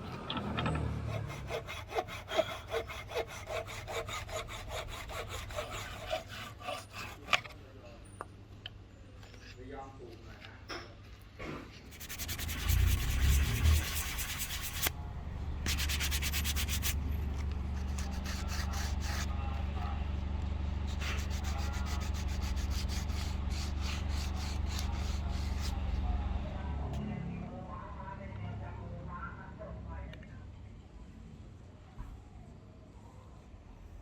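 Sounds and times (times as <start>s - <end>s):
sanding wood rasping: 1.1s - 7.4s, 11.9s - 14.9s, 15.6s - 17.0s, 17.7s - 19.4s, 20.8s - 25.8s
low hum: 11.9s - 27.5s.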